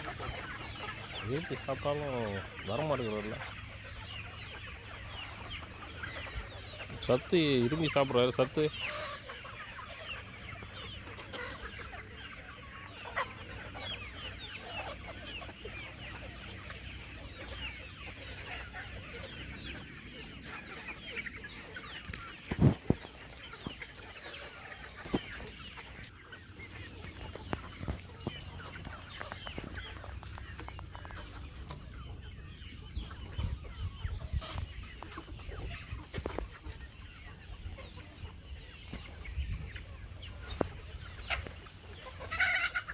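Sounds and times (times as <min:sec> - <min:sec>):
chickens clucking: 0:00.0 - 0:42.9.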